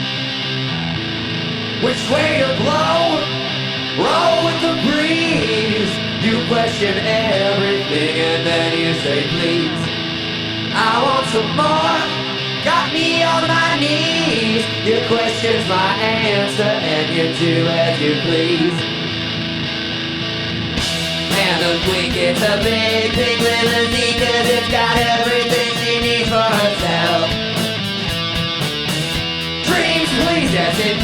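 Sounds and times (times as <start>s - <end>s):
electric guitar: 0.0s - 31.0s
person singing lead vocal: 1.8s - 19.1s, 20.8s - 28.3s, 29.4s - 31.0s
rock band playing live: 19.0s - 31.0s.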